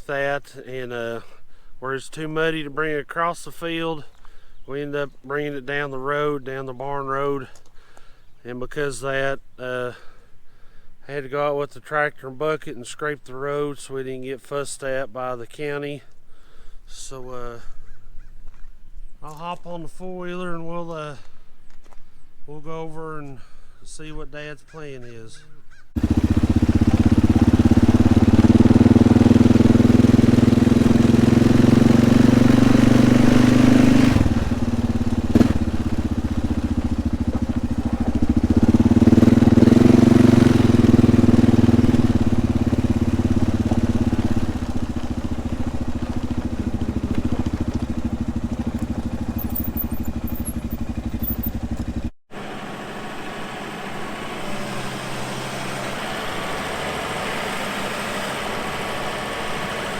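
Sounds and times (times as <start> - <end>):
atv engine running: 25.7 - 59.9.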